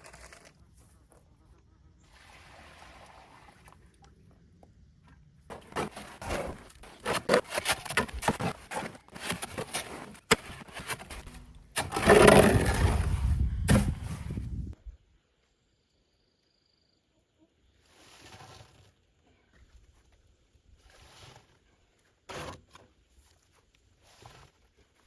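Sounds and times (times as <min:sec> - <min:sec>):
sharp knocks and scrapes: 0:05.5 - 0:14.3, 0:22.3 - 0:23.0
rough scraping noise: 0:05.5 - 0:14.8.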